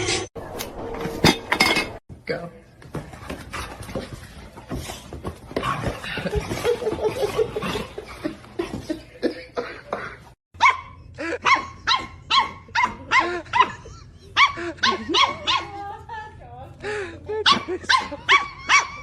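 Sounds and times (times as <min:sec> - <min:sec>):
dog barking: 0:10.6 - 0:13.8, 0:14.4 - 0:15.8, 0:17.4 - 0:19.0.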